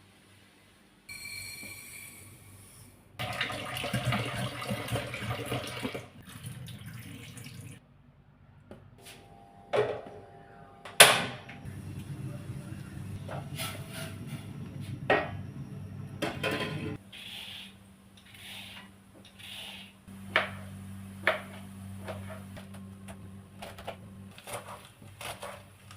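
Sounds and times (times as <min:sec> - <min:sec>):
kitchen handling noise: 0:16.2 - 0:17.0.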